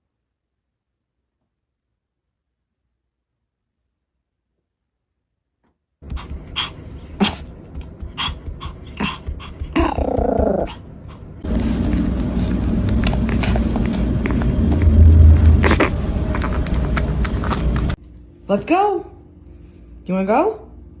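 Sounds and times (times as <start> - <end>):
steady rumbling noise: 6.0 - 18.0
dog growling: 8.2 - 11.3.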